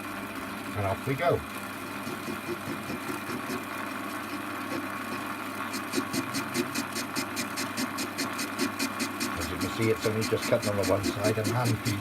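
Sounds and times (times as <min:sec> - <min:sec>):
lathe motor humming: 0:01.5 - 0:12.0
lathe tool ticking on workpiece: 0:05.7 - 0:12.0.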